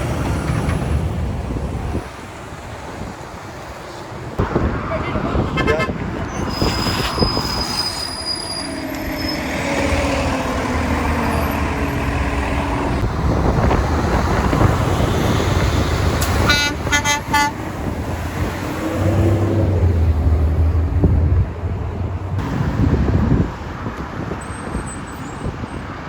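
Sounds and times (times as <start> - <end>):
truck horn toots: 5.0 - 6.1, 16.2 - 17.6.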